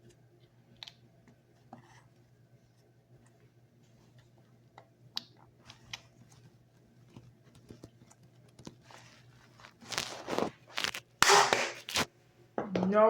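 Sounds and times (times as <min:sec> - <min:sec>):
noisy handling sounds: 0:02.8 - 0:12.1
faint clicks and taps: 0:03.2 - 0:09.8.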